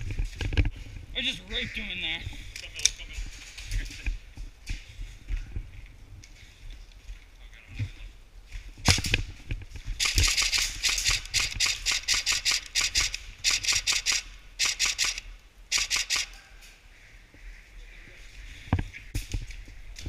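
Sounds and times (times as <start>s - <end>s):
airsoft guns firing: 8.8s - 9.2s, 9.9s - 16.4s.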